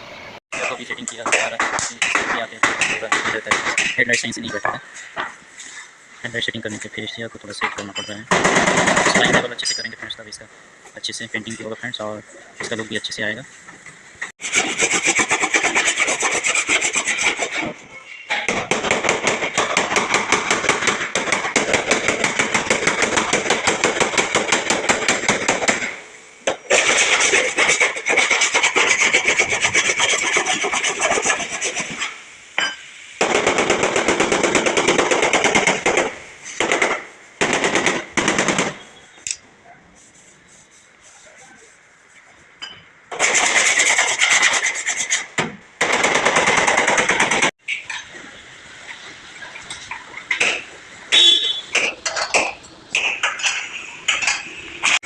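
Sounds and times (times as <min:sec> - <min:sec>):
power tool rasping on sheet metal: 0:14.4 - 0:17.8, 0:26.8 - 0:32.1, 0:43.2 - 0:45.3.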